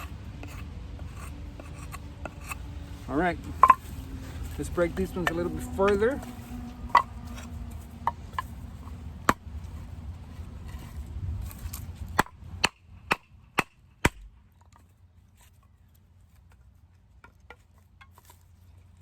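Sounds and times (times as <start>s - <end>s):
knife batoned through wood: 0.0s - 2.8s.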